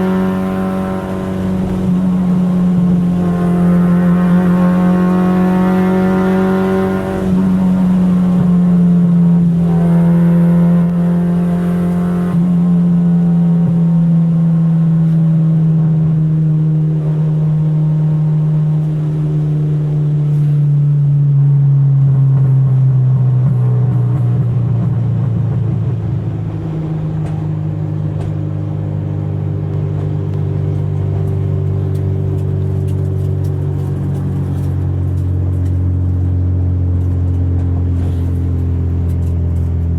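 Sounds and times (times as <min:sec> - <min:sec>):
car engine revving: 0:00.0 - 0:20.9, 0:21.9 - 0:39.9.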